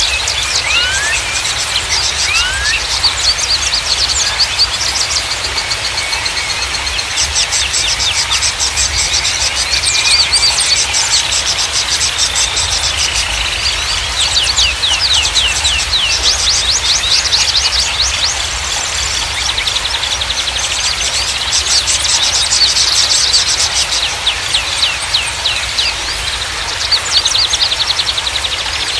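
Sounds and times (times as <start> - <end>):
downward-sweeping whistled bird notes: 0.0 - 18.6
songbirds chirping and trilling: 0.0 - 28.9.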